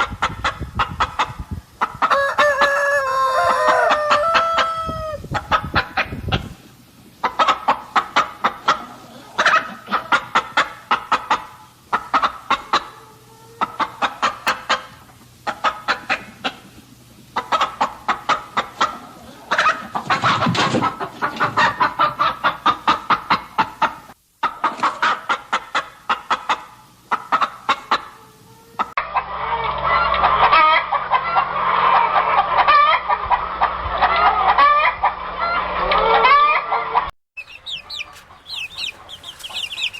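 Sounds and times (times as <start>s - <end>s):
chickens clucking: 0.0s - 28.2s, 37.4s - 39.9s.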